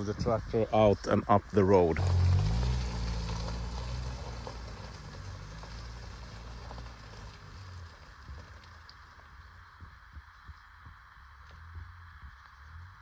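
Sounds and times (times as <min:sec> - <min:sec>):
tractor engine humming: 0:01.4 - 0:11.0.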